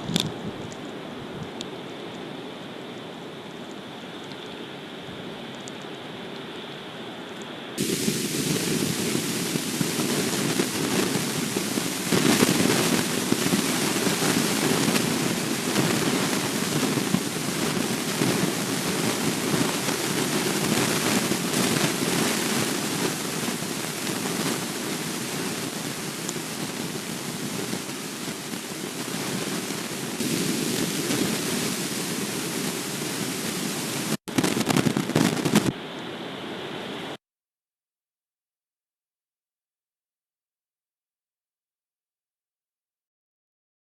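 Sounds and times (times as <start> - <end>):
storm wind on microphone: 0.0 - 1.6, 7.8 - 35.8.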